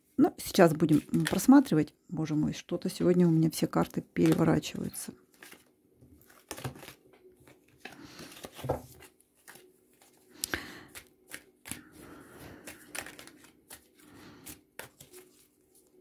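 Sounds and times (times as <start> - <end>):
cards being shuffled: 0.8 - 1.5, 4.2 - 4.7, 5.3 - 16.0.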